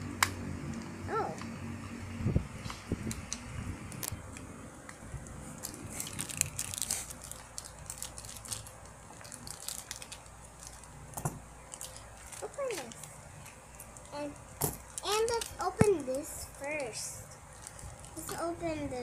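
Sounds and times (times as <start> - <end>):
plastic packaging crinkling: 5.4 - 18.6.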